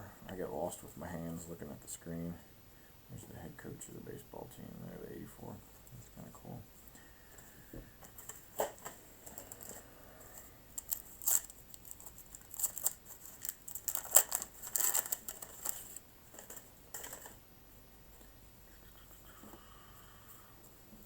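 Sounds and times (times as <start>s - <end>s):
paper cards rustling and crinkling: 7.3s - 17.4s.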